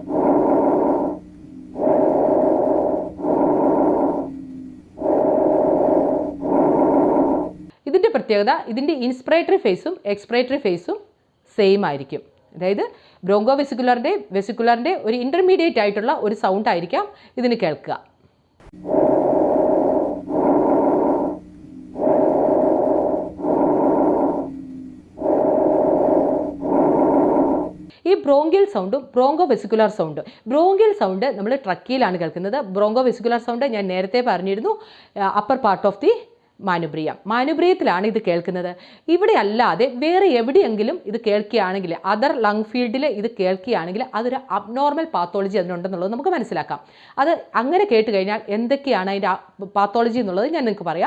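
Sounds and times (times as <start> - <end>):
breath sound hiss of airflow: 0.0 - 7.7, 18.6 - 28.0.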